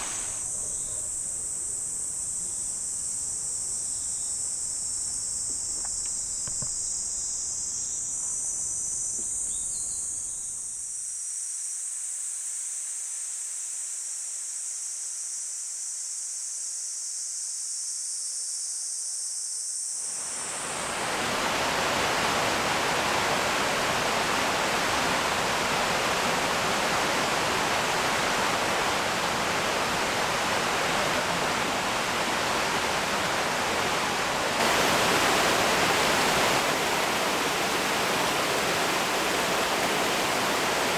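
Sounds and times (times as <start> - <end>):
waterfall rushing: 0.0 - 0.4, 20.2 - 40.9
insects chirring: 0.0 - 11.5, 12.2 - 40.9.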